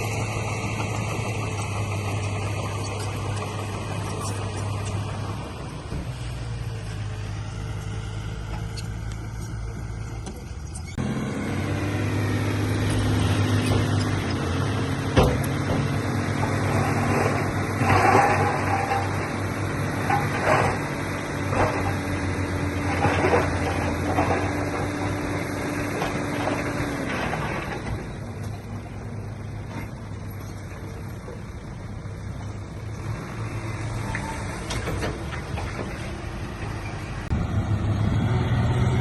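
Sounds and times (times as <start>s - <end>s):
heavy diesel engine running: 0.0s - 39.0s
scraping and rattling: 12.8s - 28.2s.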